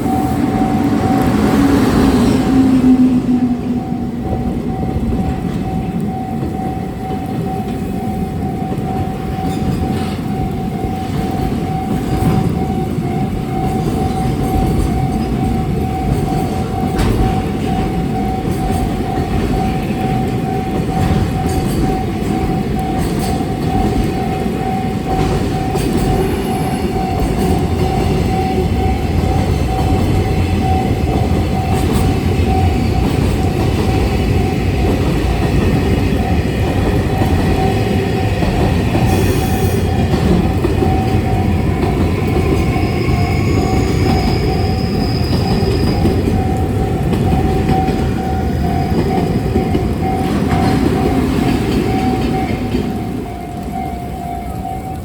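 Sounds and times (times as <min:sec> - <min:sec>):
freight train rumbling past: 0:00.0 - 0:55.0
wheels clicking over rail joints: 0:00.0 - 0:55.0
rising squeal: 0:40.8 - 0:51.2.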